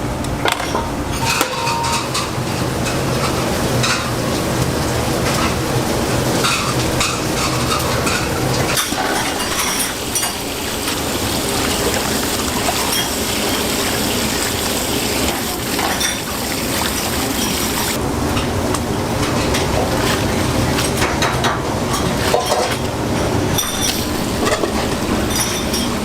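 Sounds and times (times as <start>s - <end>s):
liquid sloshing and gushing: 3.2s - 18.0s, 19.0s - 25.8s.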